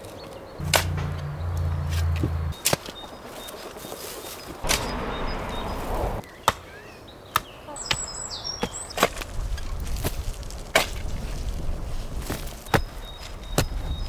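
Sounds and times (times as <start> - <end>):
wood chopping blows: 0.6 - 2.9, 4.6 - 6.7.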